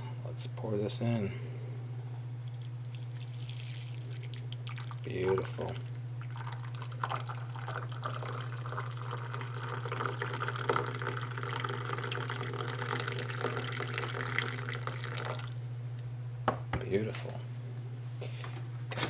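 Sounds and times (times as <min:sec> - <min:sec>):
coffee pouring into cup: 0:02.4 - 0:16.0.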